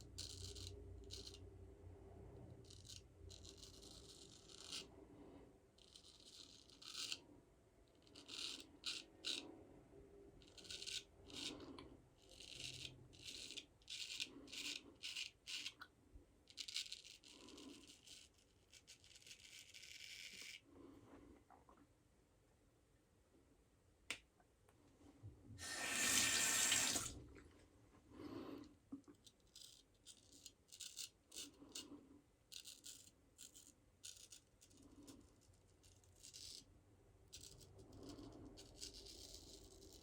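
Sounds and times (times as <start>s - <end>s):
razor scraping stubble: 25.6s - 27.1s.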